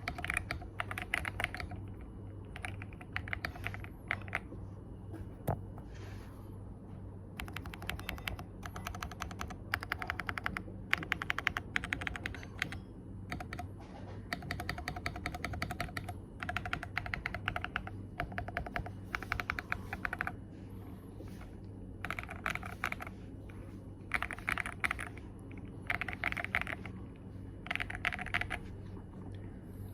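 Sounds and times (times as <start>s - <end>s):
keyboard keys clicking: 0.0s - 4.5s, 7.4s - 13.7s, 14.3s - 20.4s, 22.0s - 23.1s, 24.1s - 25.2s, 25.8s - 26.9s, 27.7s - 28.6s
low steady hum: 0.0s - 29.9s.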